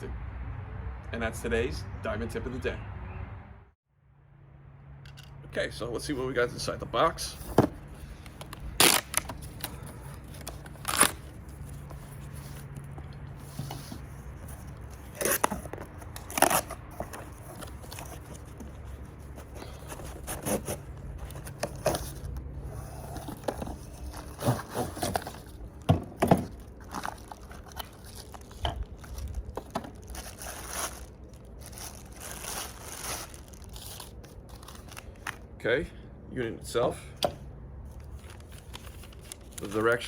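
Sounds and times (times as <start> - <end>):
packaging scraping and rustling: 7.0 - 35.4, 37.9 - 40.0
cardboard box being opened: 7.4 - 35.4.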